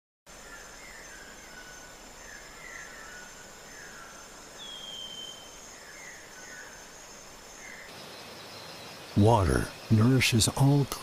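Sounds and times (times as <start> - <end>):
high insect drone: 0.3 - 11.0
bird sweeping call: 0.4 - 6.9.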